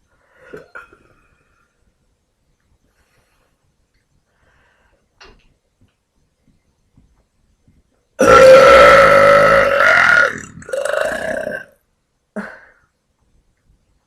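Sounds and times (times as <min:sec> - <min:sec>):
woman belching: 0:08.2 - 0:11.8.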